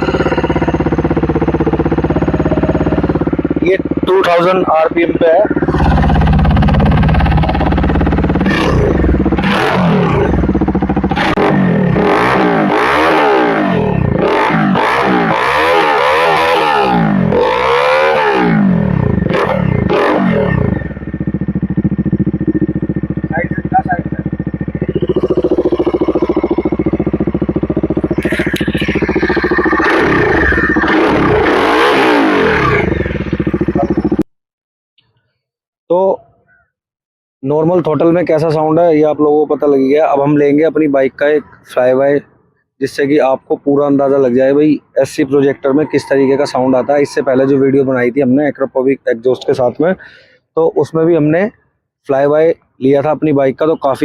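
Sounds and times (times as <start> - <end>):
motorcycle engine revving: 0.0 - 34.3.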